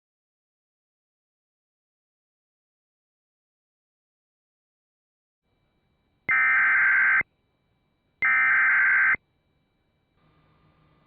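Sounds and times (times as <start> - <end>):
digital data tone bursts: 6.3 - 7.2, 8.2 - 9.2.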